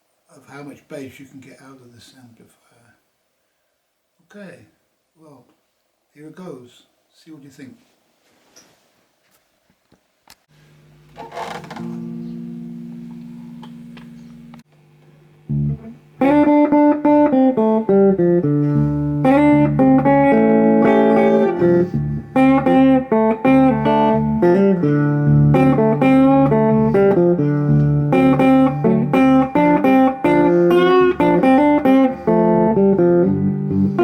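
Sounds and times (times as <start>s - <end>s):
electric guitar playing blues: 11.8s - 14.6s, 15.5s - 34.0s.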